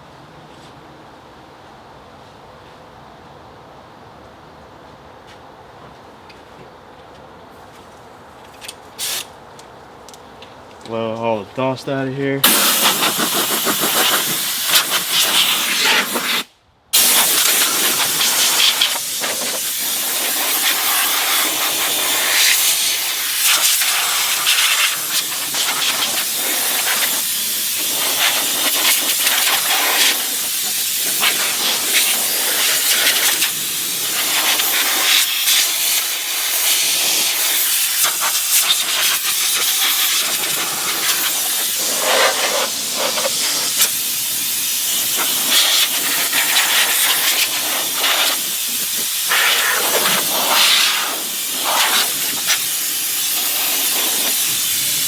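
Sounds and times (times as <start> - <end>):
compressed air blowgun hissing: 9.0 - 9.3, 12.4 - 55.0.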